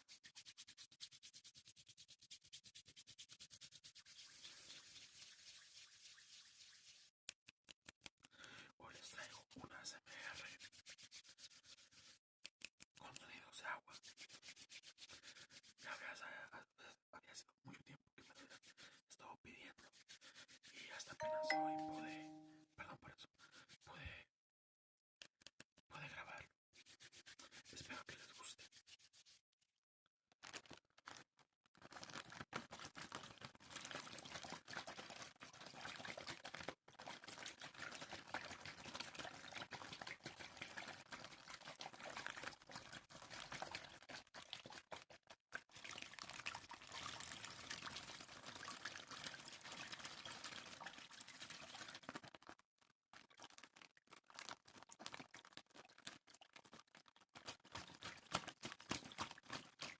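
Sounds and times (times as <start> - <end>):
water pouring and trickling: 3.6 - 7.2, 30.4 - 59.9.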